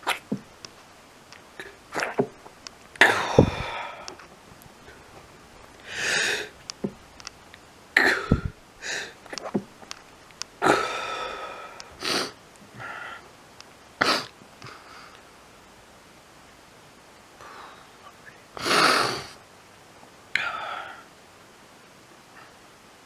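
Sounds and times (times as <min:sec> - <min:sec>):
person sneezing: 0:03.0 - 0:03.9, 0:08.0 - 0:09.2, 0:14.0 - 0:14.3
person sniffing: 0:05.8 - 0:06.6, 0:08.0 - 0:09.2, 0:10.6 - 0:13.0, 0:18.6 - 0:19.4.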